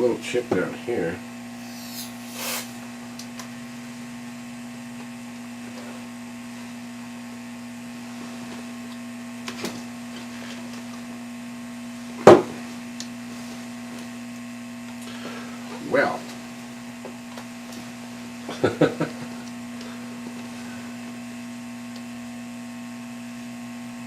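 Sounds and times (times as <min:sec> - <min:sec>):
electrical hum: 0:00.0 - 0:24.0
sharp burst of noise: 0:01.6 - 0:02.9.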